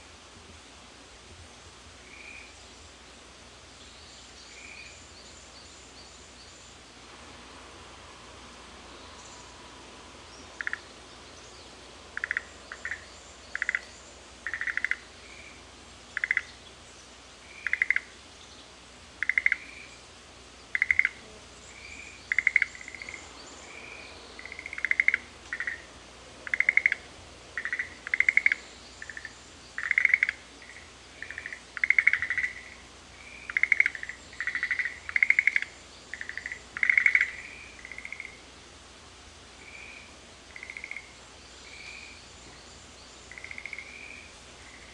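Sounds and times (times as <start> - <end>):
faint steady hiss: 0.0 - 44.9
frogs rattling calls: 10.6 - 11.0, 12.1 - 16.7, 17.4 - 18.2, 19.2 - 20.0, 20.7 - 38.5, 39.6 - 42.2, 43.2 - 44.9.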